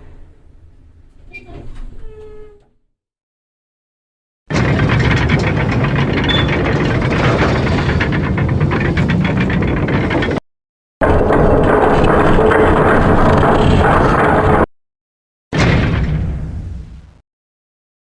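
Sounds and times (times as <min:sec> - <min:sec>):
elevator rumbling and rattling: 0:00.0 - 0:02.7, 0:04.5 - 0:10.4, 0:11.0 - 0:14.7.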